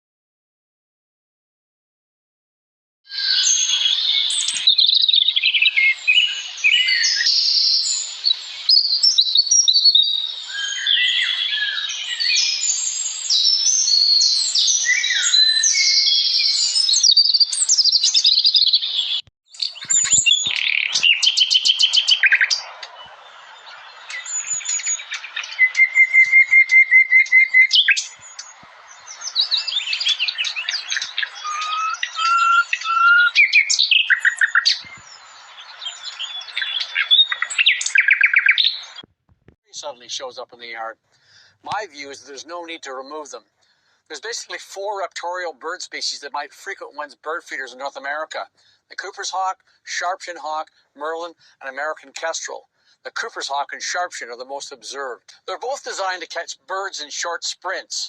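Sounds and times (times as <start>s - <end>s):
bird trills: 3.1s - 39.0s
small birds chirping and singing: 3.1s - 39.1s.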